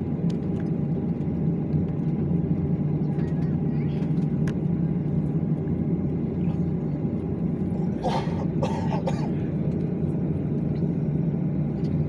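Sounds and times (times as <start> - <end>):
jet engine drone in cabin: 0.0 - 12.0
person coughing: 7.9 - 9.5.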